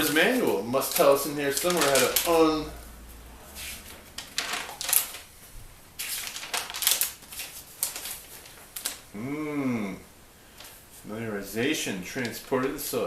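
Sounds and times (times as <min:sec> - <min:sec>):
paper pages rustling: 0:00.0 - 0:02.8, 0:03.5 - 0:09.0.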